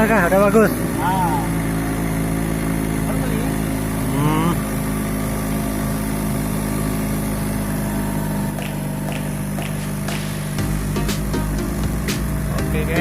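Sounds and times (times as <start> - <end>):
small boat engine running: 0.0 - 13.0.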